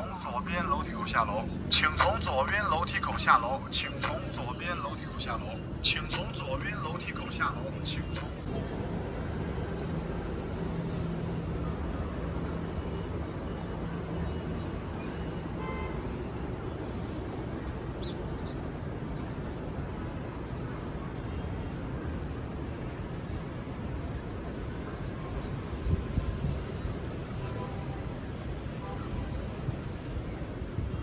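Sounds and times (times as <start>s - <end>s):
city traffic hum: 0.0s - 31.0s.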